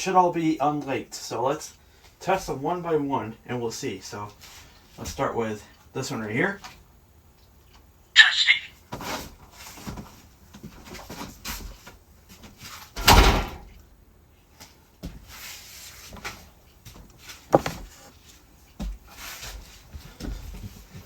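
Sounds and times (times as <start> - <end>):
hard objects knocking: 17.5 - 17.9.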